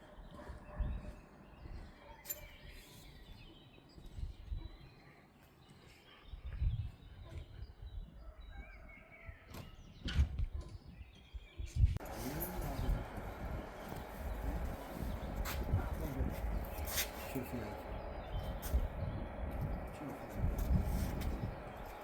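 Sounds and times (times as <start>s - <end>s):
faint bird chirps: 0.0s - 22.0s
uneven low rumble: 12.0s - 22.0s.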